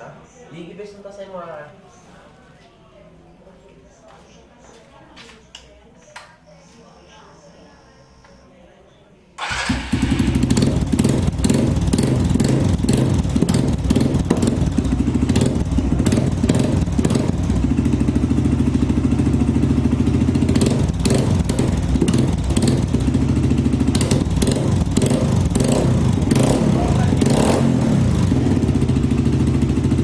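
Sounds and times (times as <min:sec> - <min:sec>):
motorcycle engine idling: 0:09.4 - 0:30.0.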